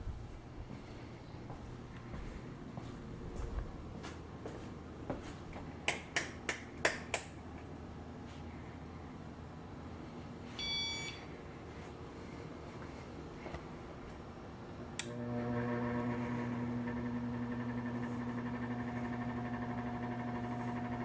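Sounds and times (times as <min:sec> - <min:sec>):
ceiling fans humming: 0:00.0 - 0:21.0
short electronic beep: 0:10.6 - 0:11.3.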